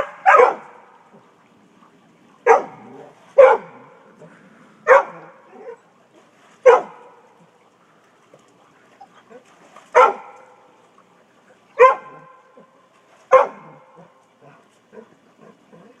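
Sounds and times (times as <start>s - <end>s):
dog barking: 0.0s - 0.8s, 2.4s - 2.8s, 3.4s - 3.9s, 4.8s - 5.7s, 6.6s - 7.1s, 9.9s - 10.4s, 11.8s - 12.3s, 13.3s - 14.1s.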